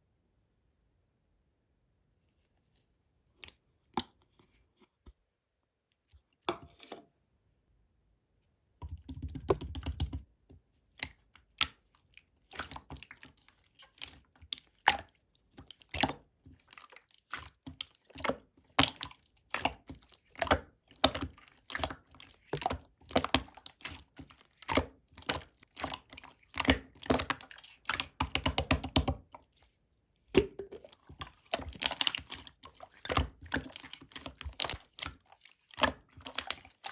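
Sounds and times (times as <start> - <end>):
slime squishing and popping: 15.7 - 29.3, 30.3 - 36.9.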